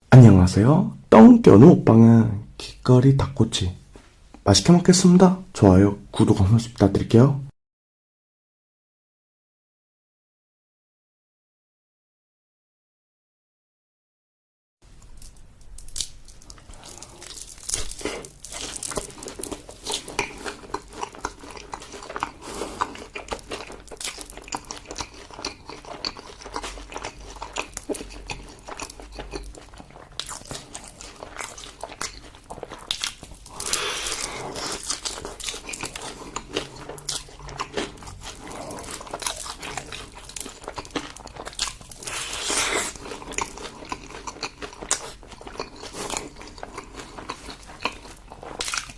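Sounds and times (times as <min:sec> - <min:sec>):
person biting and chewing: 0:15.1 - 0:48.9.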